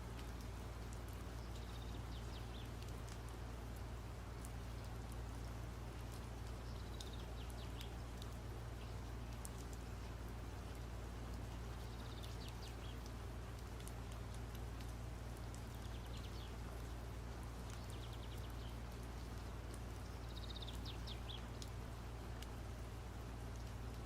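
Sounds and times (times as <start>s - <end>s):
small bird chirping: 6.6s - 8.0s, 11.8s - 13.1s, 20.0s - 21.7s.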